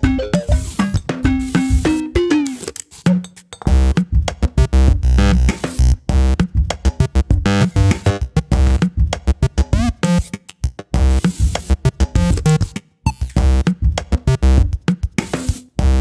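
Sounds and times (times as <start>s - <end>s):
electronic music with synthesizer: 0.0s - 2.8s
fast drum machine beat: 0.0s - 16.0s.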